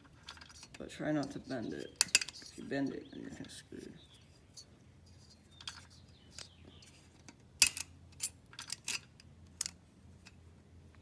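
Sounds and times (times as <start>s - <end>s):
metal parts clicking and clinking: 0.0s - 3.5s, 4.2s - 10.4s.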